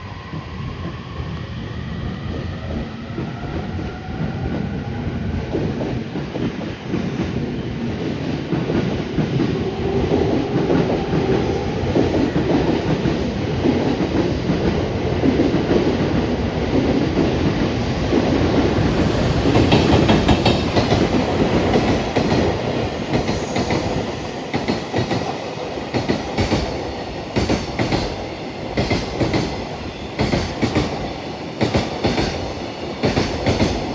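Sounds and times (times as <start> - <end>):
locomotive whine: 0.0 - 5.7, 9.2 - 27.0
train wheels rumbling on rail: 0.0 - 33.9.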